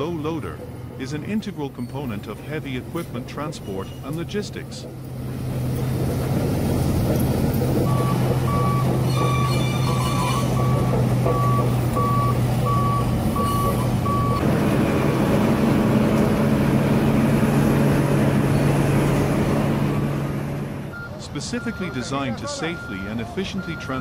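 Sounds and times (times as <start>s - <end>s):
heavy vehicle engine running: 0.0s - 24.0s
back-up alarm beeping: 7.9s - 14.4s, 20.9s - 24.0s.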